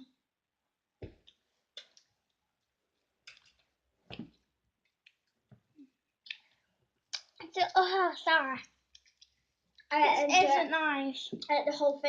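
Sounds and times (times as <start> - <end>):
sweet being handled and eaten: 8.8 - 9.9.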